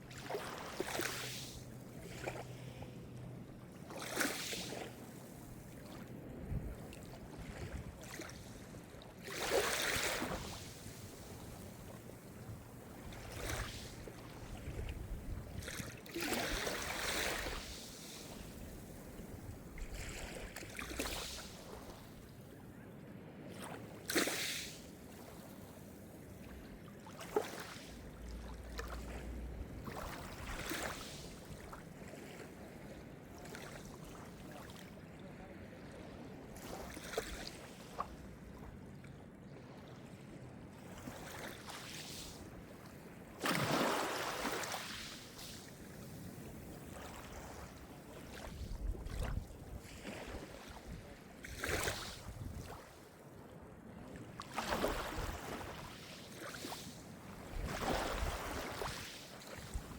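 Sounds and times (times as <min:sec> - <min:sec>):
small waves breaking on shore: 0:00.0 - 0:22.8, 0:23.4 - 0:59.9
water splashes: 0:43.4 - 0:45.6.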